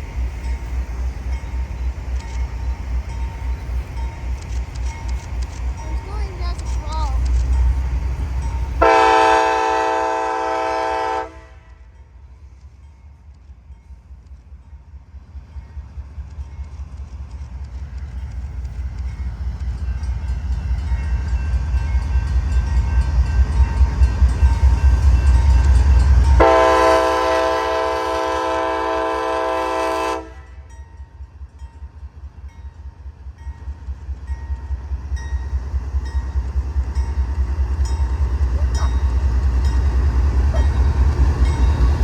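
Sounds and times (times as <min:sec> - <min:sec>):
freight train rumbling past: 0:00.0 - 0:42.0
locomotive air horn blast: 0:08.8 - 0:11.8, 0:26.4 - 0:30.6.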